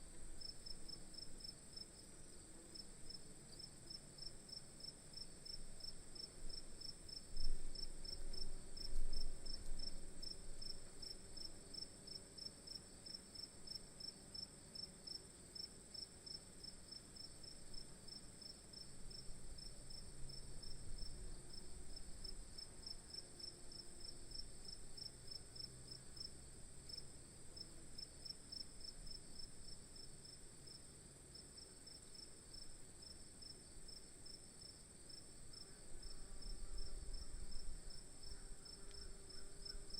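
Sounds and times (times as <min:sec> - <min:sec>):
insects chirping: 0:31.9 - 0:39.9.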